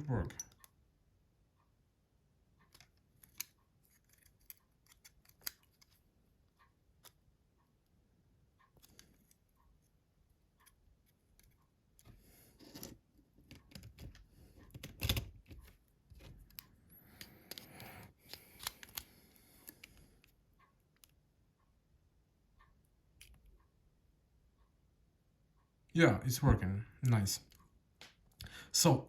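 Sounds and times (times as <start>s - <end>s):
plastic phone parts clicking: 2.6s - 6.0s, 11.4s - 20.0s.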